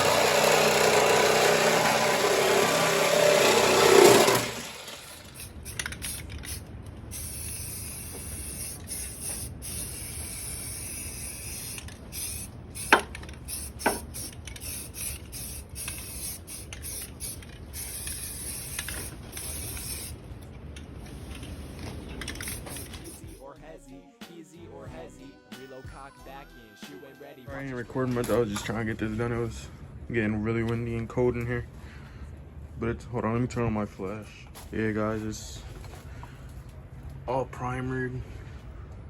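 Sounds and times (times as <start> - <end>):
loud motor running: 0.0 - 5.4
aerosol can spraying hiss: 5.4 - 20.2.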